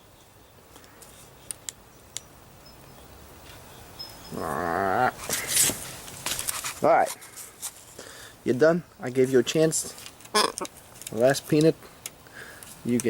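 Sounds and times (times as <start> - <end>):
animal call with wavering pitch: 4.3 - 5.2
brief rustle: 5.2 - 8.0.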